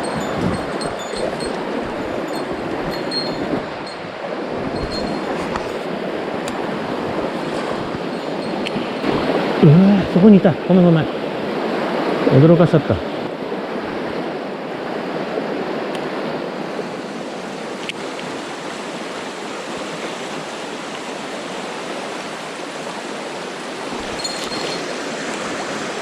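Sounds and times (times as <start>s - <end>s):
stream rushing over rocks: 0.0s - 26.0s.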